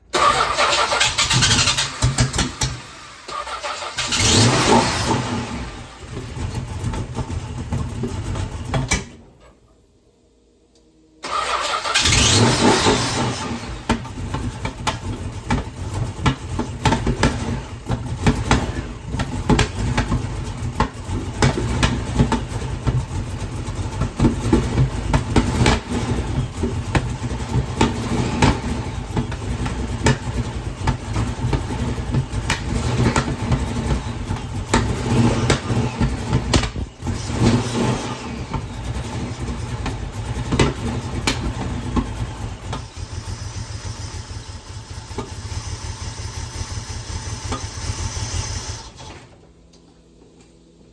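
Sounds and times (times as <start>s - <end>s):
engine popping: 0.0s - 9.1s, 11.3s - 49.0s
engine idling roughly: 13.7s - 49.0s.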